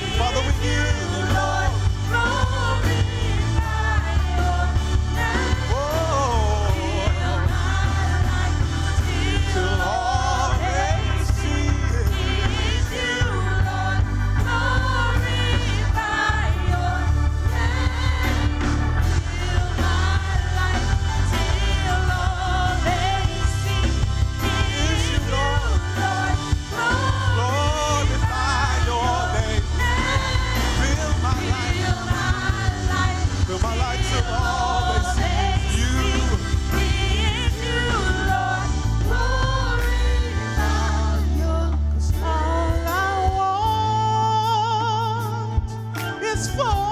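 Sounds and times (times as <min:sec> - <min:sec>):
gospel singing with band: 0:00.0 - 0:46.9.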